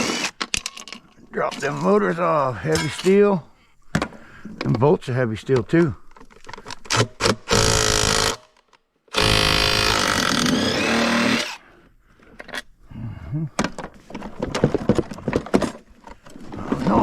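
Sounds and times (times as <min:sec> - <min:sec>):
power tool spinning out bolts: 0:09.1 - 0:11.6.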